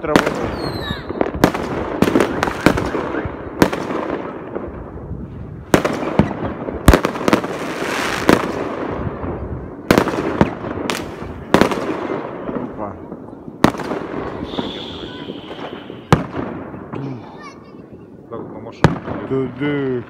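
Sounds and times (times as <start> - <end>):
fireworks bangs: 0.0 - 20.0.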